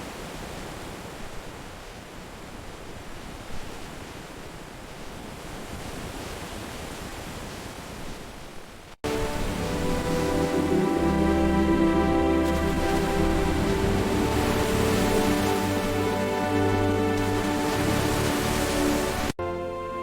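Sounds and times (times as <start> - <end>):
ocean surf washing: 9.0 - 20.0.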